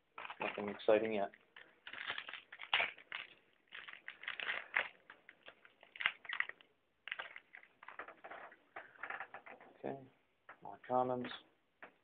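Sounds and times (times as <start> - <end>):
trading cards rustling and flicking: 0.2 - 8.2.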